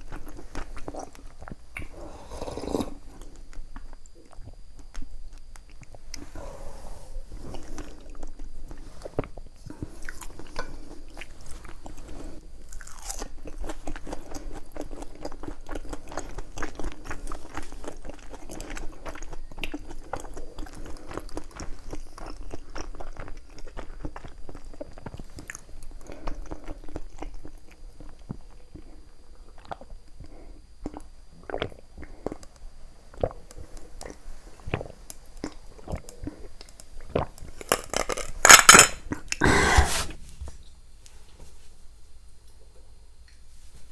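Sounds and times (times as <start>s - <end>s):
crisp crunches of chewing food: 0.0s - 6.7s, 7.3s - 40.0s.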